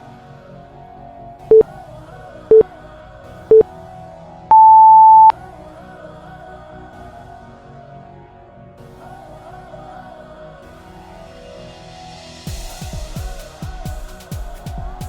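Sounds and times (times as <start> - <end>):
background music: 0.0 - 15.0
longer higher beep: 4.5 - 5.3
timer beeps: 4.5 - 5.3.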